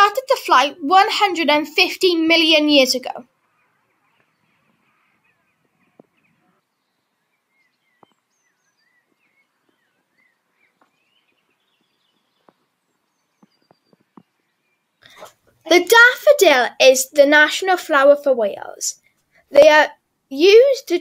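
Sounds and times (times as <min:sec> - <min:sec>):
faint birdsong: 0:01.5 - 0:15.7.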